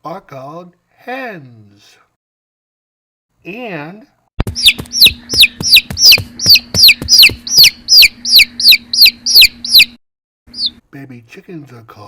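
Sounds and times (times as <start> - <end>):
baby chicks peeping: 4.4 - 10.8.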